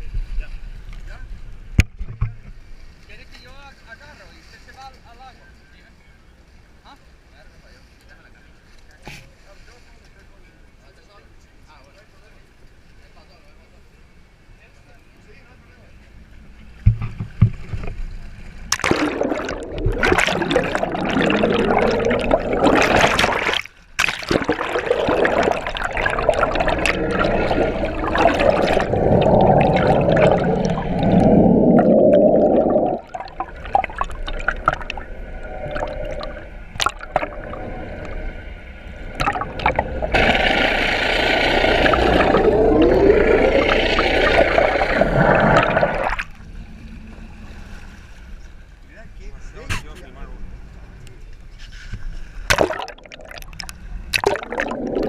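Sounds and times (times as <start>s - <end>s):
water rushing and gurgling: 18.4s - 48.4s, 52.5s - 55.0s.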